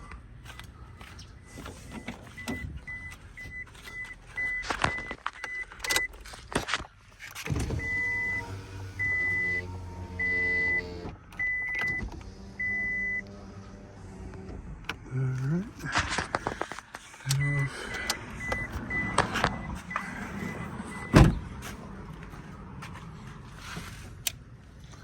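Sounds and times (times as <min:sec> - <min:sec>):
car warning chime beeping: 0:01.4 - 0:06.2, 0:07.7 - 0:13.3, 0:17.2 - 0:21.3
power window motor humming: 0:07.5 - 0:14.8.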